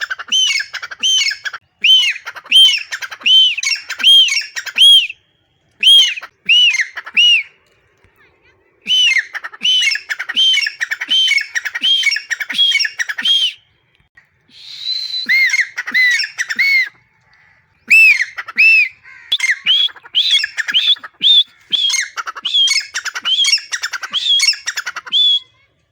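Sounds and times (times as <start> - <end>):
francolin calling: 8.6 - 13.9, 14.5 - 25.5.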